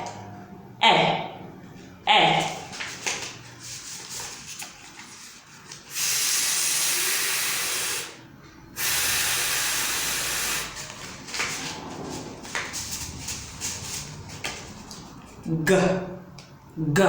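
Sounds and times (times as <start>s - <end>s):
woman making f hiss sound: 5.9s - 8.2s, 8.8s - 10.9s.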